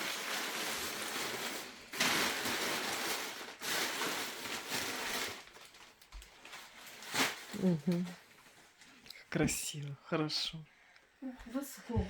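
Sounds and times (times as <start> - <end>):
paper rustling and crumpling: 0.0 - 9.0.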